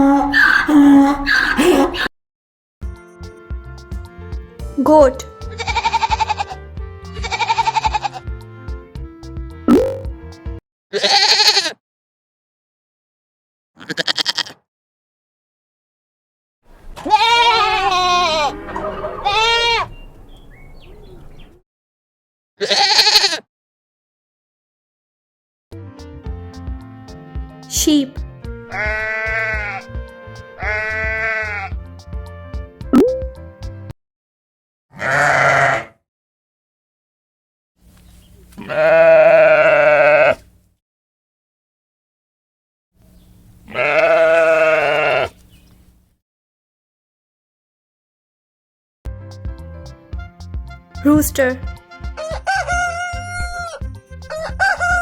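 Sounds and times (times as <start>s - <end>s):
goat bleating: 5.4s - 8.3s, 10.9s - 11.8s, 13.8s - 14.6s, 16.9s - 20.0s, 22.6s - 23.4s, 28.7s - 29.9s, 30.6s - 31.8s, 34.9s - 35.9s, 38.5s - 40.5s, 43.7s - 45.4s, 52.2s - 55.0s.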